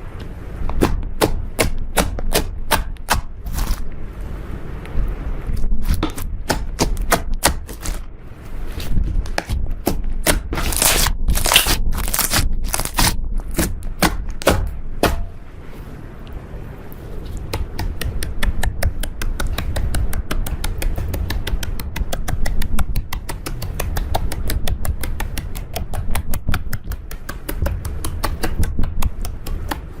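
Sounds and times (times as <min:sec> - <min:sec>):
slime squishing and snapping: 0:09.2 - 0:14.6
air bubbles crackling in slime: 0:10.6 - 0:13.8.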